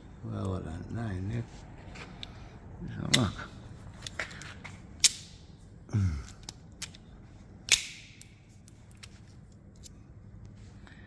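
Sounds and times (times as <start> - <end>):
rivet gun clicks: 5.0 - 5.4, 6.3 - 7.0, 7.7 - 9.2
rivet gun cracking: 5.0 - 5.4, 7.7 - 9.2.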